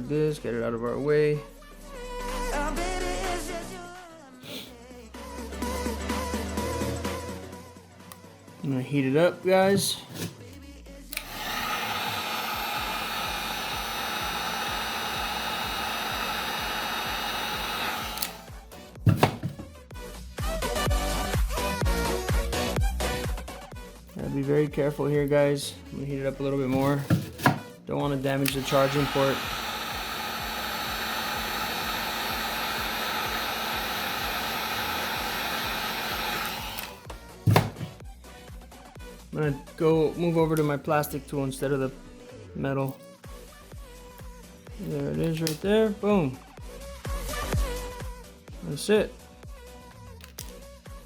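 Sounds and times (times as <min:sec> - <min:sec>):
heat gun blowing air: 0:09.6 - 0:10.4, 0:11.1 - 0:19.6, 0:28.3 - 0:37.9
sharp clicks: 0:16.2 - 0:18.5.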